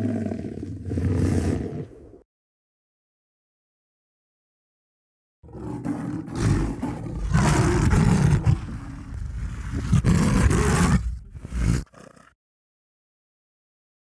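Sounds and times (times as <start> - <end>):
big cat roaring: 5.5 - 12.3.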